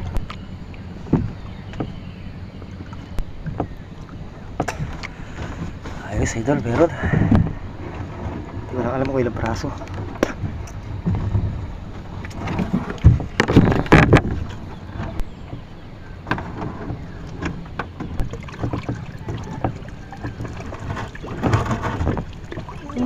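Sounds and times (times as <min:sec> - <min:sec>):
water splashing: 0:00.0 - 0:23.0
knocks and clatter: 0:09.4 - 0:15.6.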